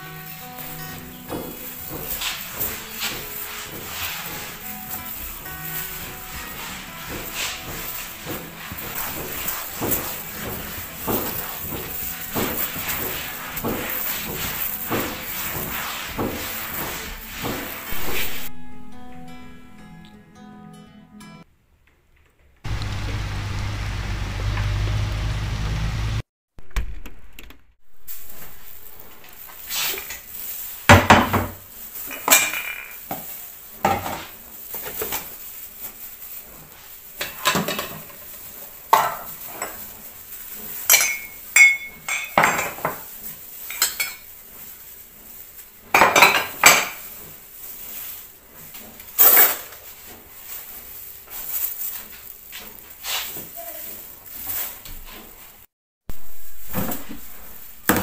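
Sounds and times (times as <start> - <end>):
dishes and cutlery clinking: 0.0 - 18.5, 30.0 - 52.8.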